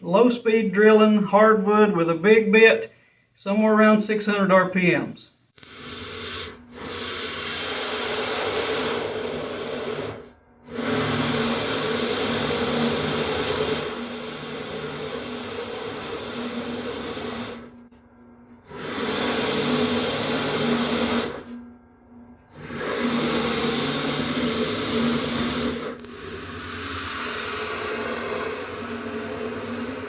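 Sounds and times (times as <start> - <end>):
drill press boring into wood: 5.6 - 17.8, 18.7 - 21.6, 22.6 - 30.0.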